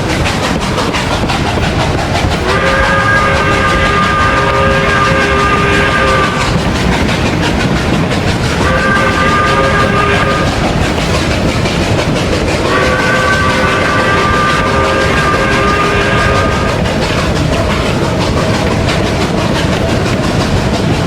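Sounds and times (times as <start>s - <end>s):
steam locomotive chuffing: 0.0s - 21.0s
steam train whistle blasts: 2.4s - 6.6s, 8.5s - 10.7s, 12.6s - 17.1s.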